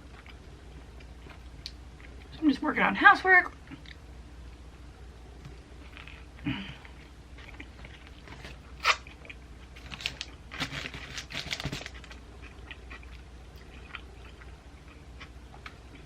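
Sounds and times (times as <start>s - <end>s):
chewing and crunching sandwich: 0.0s - 2.3s, 5.3s - 16.0s.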